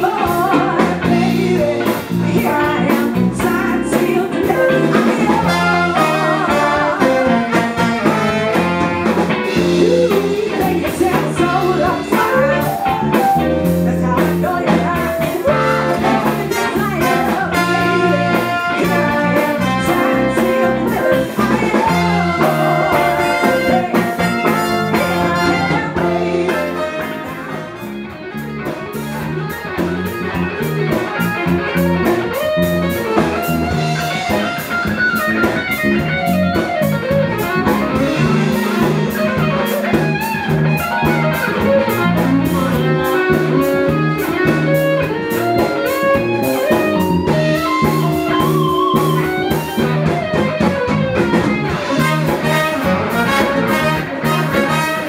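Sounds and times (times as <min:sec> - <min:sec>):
person singing: 0:00.0 - 0:28.1, 0:41.0 - 0:55.0
electric bass line: 0:00.0 - 0:55.0
live band playing funk: 0:00.0 - 0:55.0
horns: 0:04.6 - 0:10.3, 0:15.2 - 0:28.2, 0:50.8 - 0:55.0.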